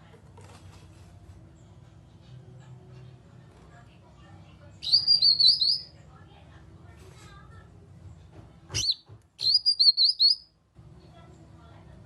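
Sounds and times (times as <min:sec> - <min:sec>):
bird singing warbled whistles: 0:04.8 - 0:05.9, 0:08.8 - 0:10.5.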